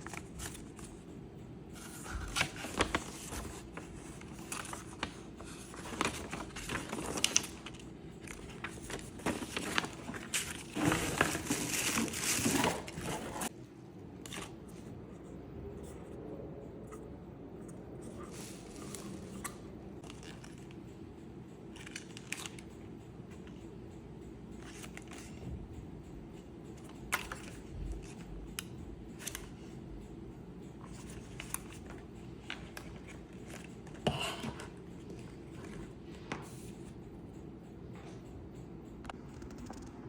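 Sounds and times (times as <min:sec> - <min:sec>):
packaging clicks and rustles: 0:01.8 - 0:13.5.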